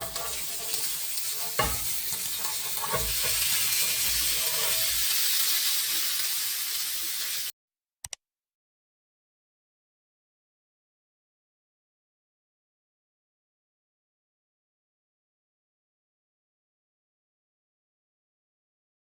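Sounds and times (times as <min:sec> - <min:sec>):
fish sizzling in oil: 0:00.0 - 0:07.5
knocks on pan: 0:01.6 - 0:02.0.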